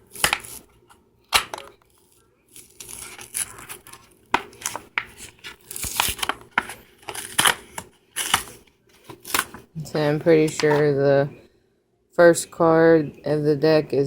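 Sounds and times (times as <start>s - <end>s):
wrapper tearing and crinkling: 1.4s - 9.7s.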